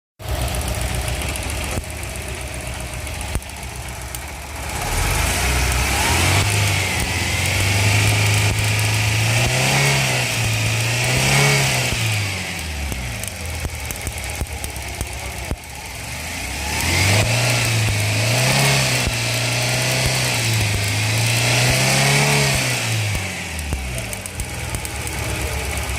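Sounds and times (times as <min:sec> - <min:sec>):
car engine idling with misfire: 0:00.2 - 0:25.9.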